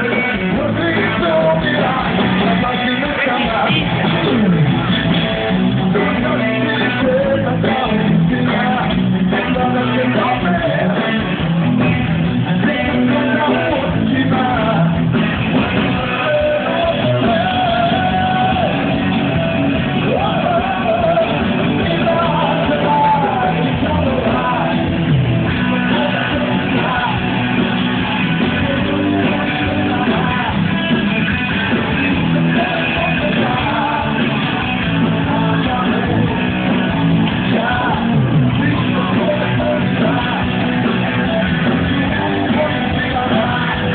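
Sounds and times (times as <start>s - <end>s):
live band playing: 0.0s - 43.9s
person singing: 0.0s - 43.9s.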